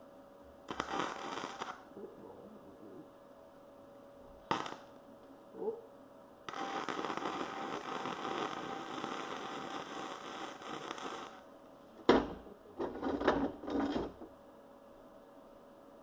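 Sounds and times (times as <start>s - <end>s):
welding arc crackling: 0.7s - 1.9s, 4.5s - 4.9s, 6.5s - 11.5s.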